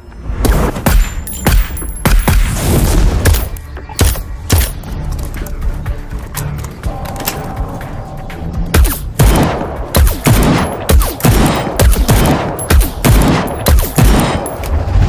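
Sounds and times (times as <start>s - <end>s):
loud gunshots with echo: 8.8s - 15.0s.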